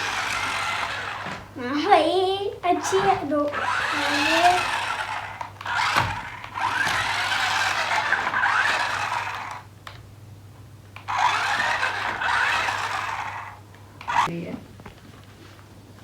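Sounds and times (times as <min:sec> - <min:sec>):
toy truck electric motor whirring: 0:00.0 - 0:01.5, 0:02.7 - 0:10.0, 0:11.0 - 0:14.3.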